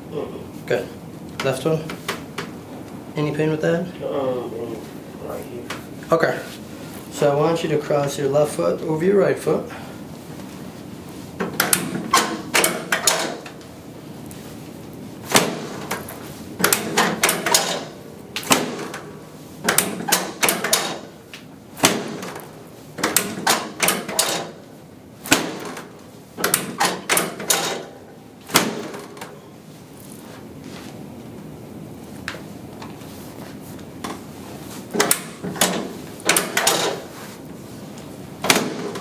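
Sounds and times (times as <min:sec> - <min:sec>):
sharp knocks and clicks: 0:11.4 - 0:13.6, 0:15.3 - 0:24.6, 0:25.3 - 0:27.9, 0:34.9 - 0:37.1, 0:38.4 - 0:39.0.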